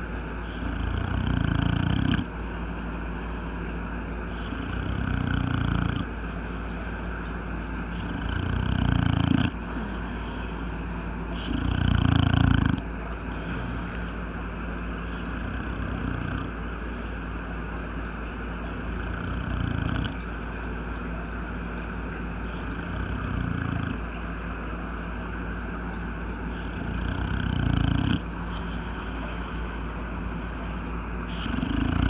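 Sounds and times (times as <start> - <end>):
dog snoring: 0.0 - 2.4, 4.2 - 17.2, 18.6 - 20.4, 22.4 - 24.1, 26.4 - 32.0.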